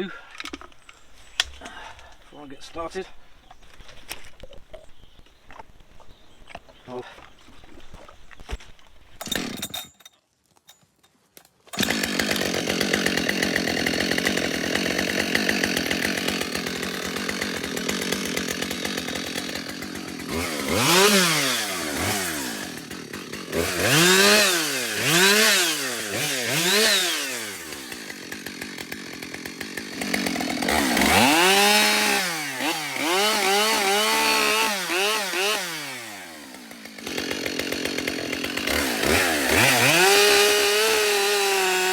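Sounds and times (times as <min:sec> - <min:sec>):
chainsaw engine revving: 0:09.2 - 0:09.8, 0:11.8 - 0:41.9.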